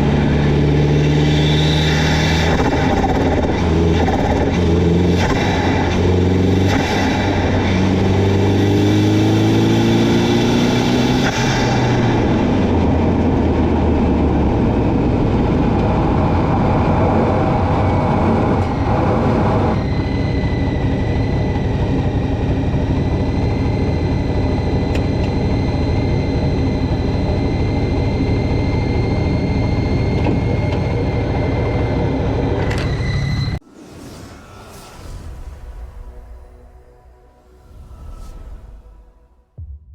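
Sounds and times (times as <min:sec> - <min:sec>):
turbocharged engine revving: 0:00.0 - 0:20.0
high whine: 0:00.0 - 0:39.9.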